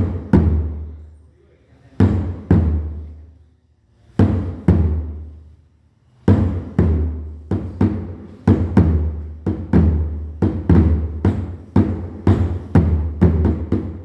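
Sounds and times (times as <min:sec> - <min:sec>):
drum booming beats: 0:00.0 - 0:01.0, 0:02.0 - 0:03.2, 0:04.2 - 0:05.5, 0:06.3 - 0:14.0.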